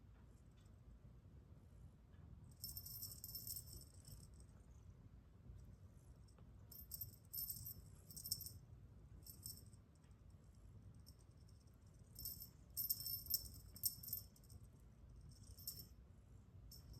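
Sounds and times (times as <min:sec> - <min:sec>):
jingle-bell toy shaken: 0:12.2 - 0:14.5.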